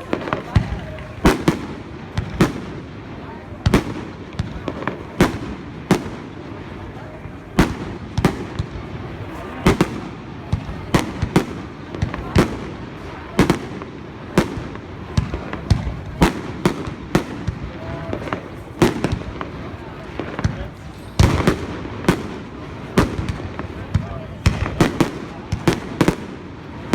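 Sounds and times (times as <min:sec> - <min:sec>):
fireworks bursting: 0:00.0 - 0:26.9.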